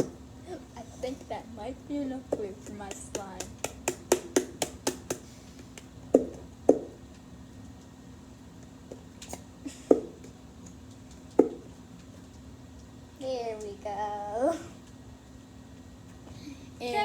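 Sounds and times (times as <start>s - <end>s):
sharp knocks on a hard object: 2.3s - 5.2s, 5.8s - 7.0s, 9.9s - 10.2s, 11.4s - 11.7s.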